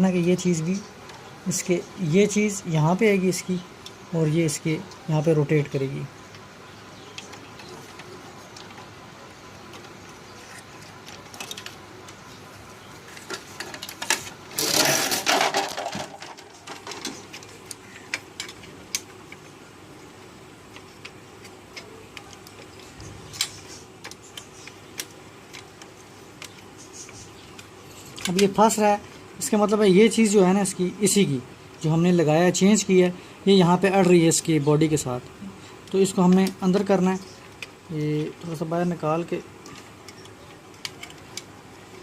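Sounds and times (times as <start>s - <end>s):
plastic parts clattering: 9.7s - 11.8s, 13.1s - 19.1s
plastic gear parts clicking and rattling: 9.8s - 11.8s, 13.1s - 19.4s, 35.9s - 42.0s.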